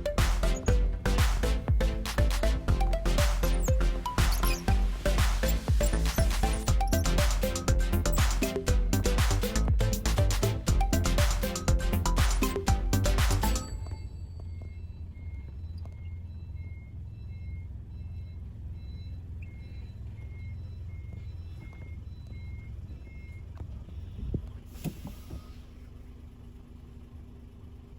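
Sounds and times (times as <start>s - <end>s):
reversing alarm beeps: 0.0s - 24.1s
diesel engine rumble: 0.0s - 27.9s
air brake hiss: 24.7s - 25.8s.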